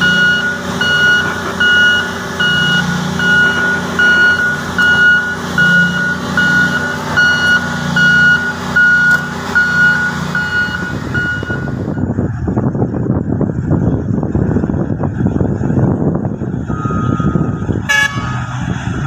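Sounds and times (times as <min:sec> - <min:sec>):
back-up alarm beeping: 0:00.0 - 0:12.1, 0:16.7 - 0:17.7
diesel engine drone: 0:00.0 - 0:19.0
rough rumbling noise: 0:00.0 - 0:19.0.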